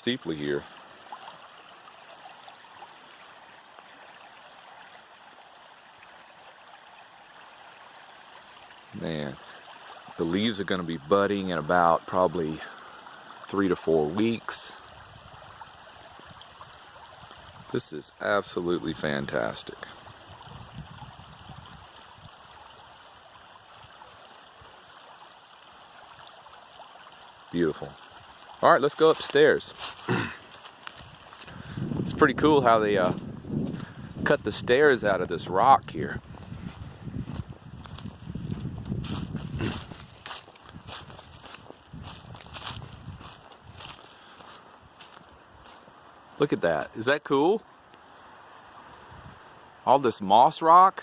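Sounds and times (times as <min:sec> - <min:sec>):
stream rushing and gurgling: 0:00.0 - 0:51.0.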